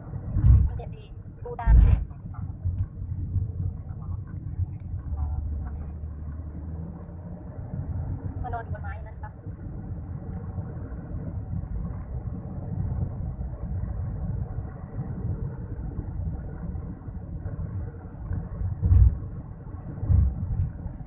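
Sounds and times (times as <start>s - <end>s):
car road noise rumble: 0.0s - 21.0s
thumps from road bumps: 1.6s - 3.0s, 18.3s - 20.8s.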